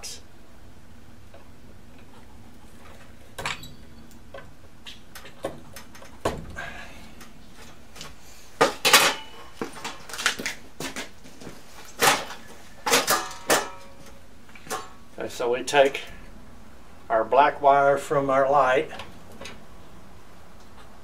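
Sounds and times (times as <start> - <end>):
hand tools and wire clinking: 2.0 - 11.0.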